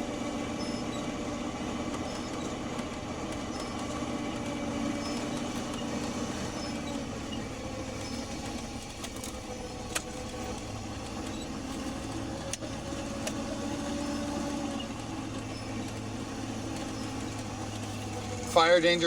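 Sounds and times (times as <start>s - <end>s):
truck engine drone: 0.0s - 19.0s.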